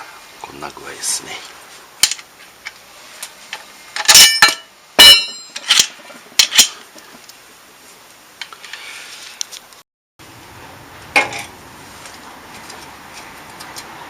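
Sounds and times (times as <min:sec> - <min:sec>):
metal parts clanking: 0:04.0 - 0:06.8.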